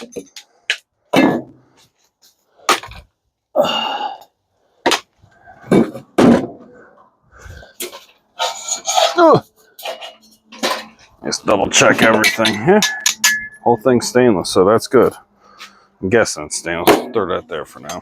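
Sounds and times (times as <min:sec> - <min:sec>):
metal parts knocking: 0:09.7 - 0:13.8.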